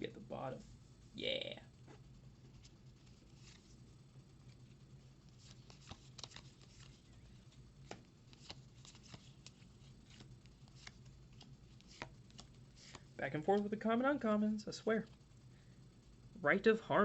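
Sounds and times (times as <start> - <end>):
trading cards flipped and set down: 5.6 - 7.0, 7.8 - 13.0.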